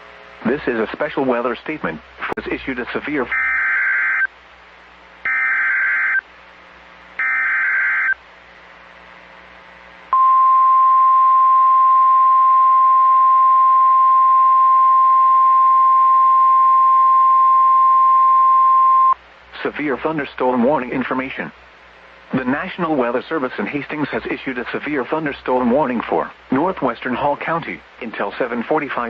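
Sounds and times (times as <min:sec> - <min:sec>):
steady warning alarm tone: 0:03.3 - 0:04.3, 0:05.2 - 0:06.2, 0:07.2 - 0:08.2
buzzy data bursts: 0:05.2 - 0:06.2, 0:07.2 - 0:08.2.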